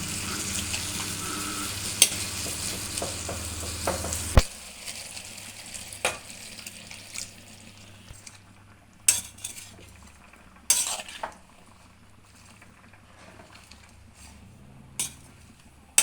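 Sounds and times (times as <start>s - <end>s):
faint frying hiss: 0.0s - 16.0s
metal utensils clinking on a pan: 9.1s - 9.9s, 10.7s - 11.4s, 15.0s - 16.0s.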